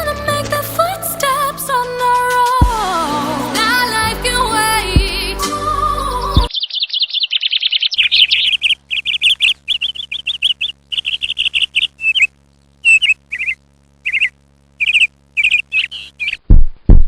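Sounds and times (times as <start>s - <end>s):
small bird chirping: 6.5s - 16.4s.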